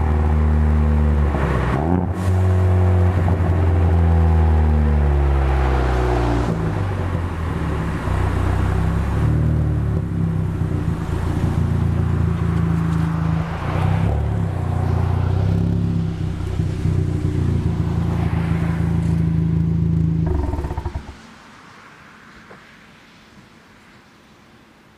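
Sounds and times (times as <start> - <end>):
car engine running at low revs: 19.0 - 21.2.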